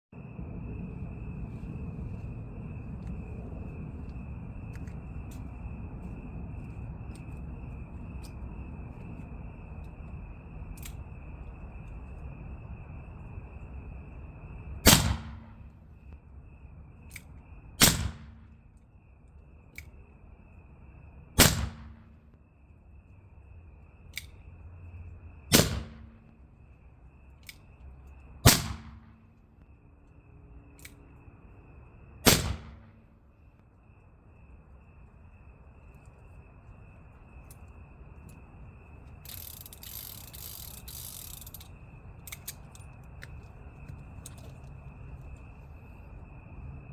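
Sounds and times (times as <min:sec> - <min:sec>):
insects chirring: 0:00.2 - 0:46.9.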